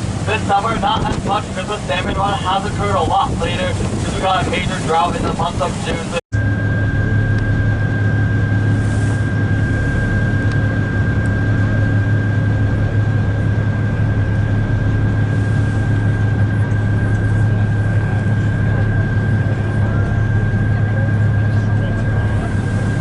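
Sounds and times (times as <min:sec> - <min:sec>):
boat engine droning: 0:00.0 - 0:23.0
thin high whine: 0:05.9 - 0:19.5.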